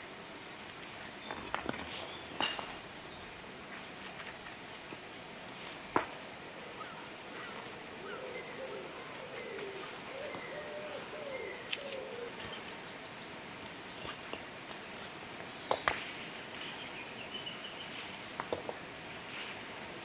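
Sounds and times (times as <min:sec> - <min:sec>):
bird cooing: 0:06.5 - 0:12.8.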